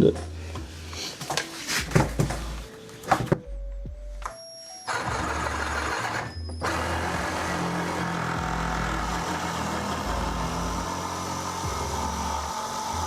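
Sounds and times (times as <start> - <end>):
power saw cutting wood: 4.9 - 13.0.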